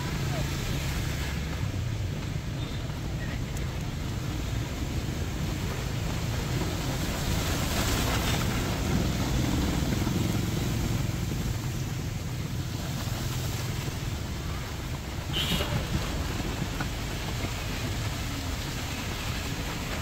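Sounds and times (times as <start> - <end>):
vehicle passing through water: 0.0 - 1.8, 4.4 - 15.0
heavy rain pouring on street: 0.0 - 20.0
low rumble of traffic: 0.0 - 20.0.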